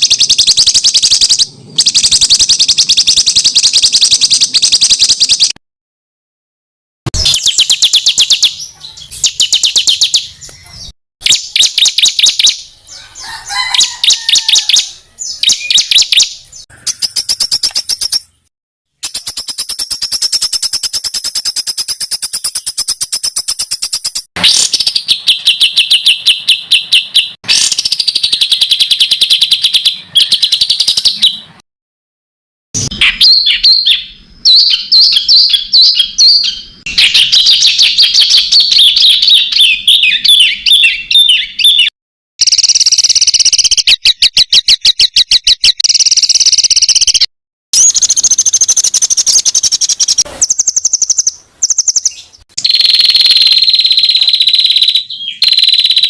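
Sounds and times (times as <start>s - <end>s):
songbird chattering and trills: 0.0s - 5.6s, 7.2s - 31.5s, 32.8s - 56.0s
long high bird whistle: 52.6s - 56.0s.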